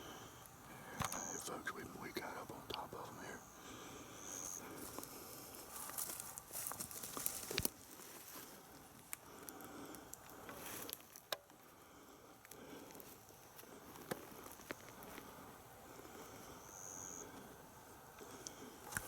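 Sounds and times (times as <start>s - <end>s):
faint rustling: 4.3s - 11.3s.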